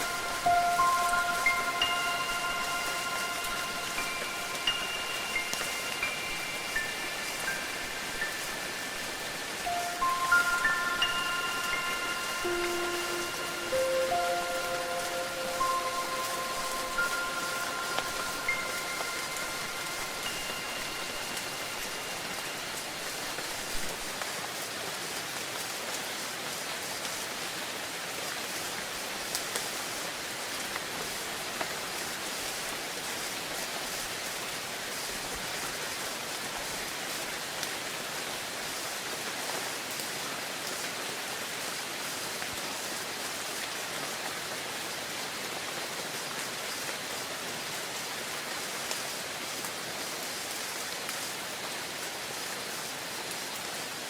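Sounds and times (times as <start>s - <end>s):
wind chime ringing: 0.0s - 23.7s
steady rain falling: 0.0s - 54.0s.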